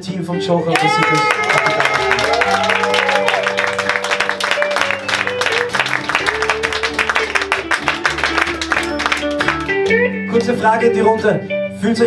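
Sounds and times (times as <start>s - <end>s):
audience applause: 0.7s - 10.0s
bass line: 1.0s - 10.9s
strummed guitar: 3.7s - 12.0s.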